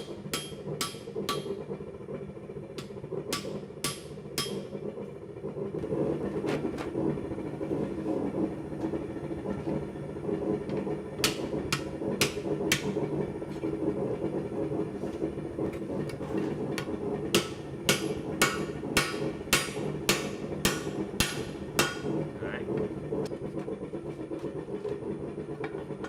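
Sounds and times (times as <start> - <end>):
hammer striking steel on anvil: 0.0 - 1.6, 2.8 - 4.7, 11.2 - 12.9, 17.3 - 22.1.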